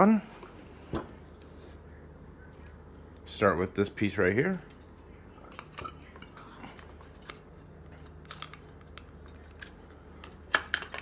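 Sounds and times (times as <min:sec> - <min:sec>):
plastic parts clicking and tapping: 0:08.0 - 0:11.0.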